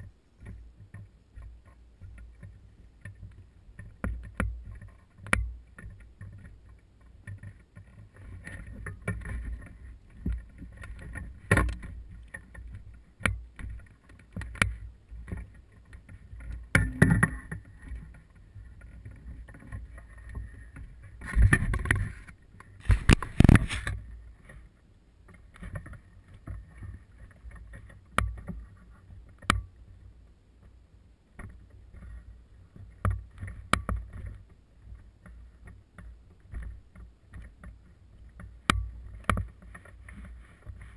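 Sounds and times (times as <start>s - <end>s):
gear knocking against boat hull: 0.0s - 24.0s.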